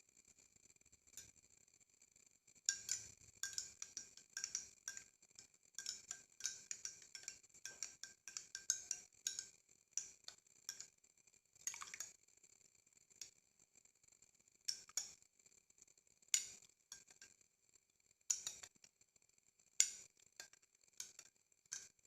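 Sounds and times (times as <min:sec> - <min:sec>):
spoon clinking against glass: 0:02.7 - 0:05.0.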